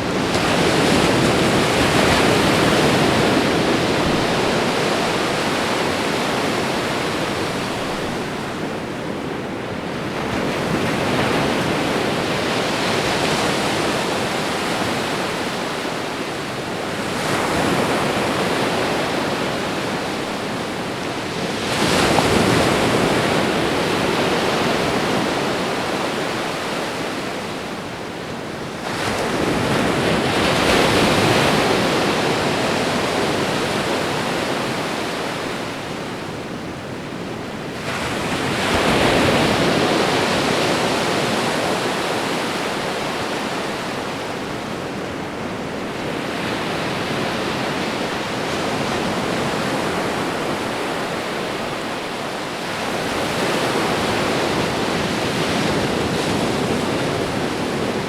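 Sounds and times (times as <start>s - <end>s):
ocean waves breaking on shore: 0.0s - 58.0s.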